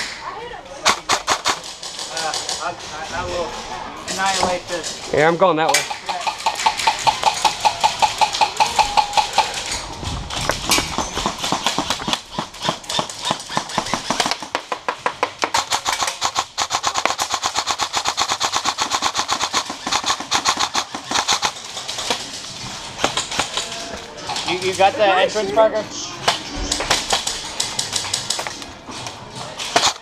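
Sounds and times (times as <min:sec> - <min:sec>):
airsoft guns firing full-auto: 0:10.9 - 0:23.7.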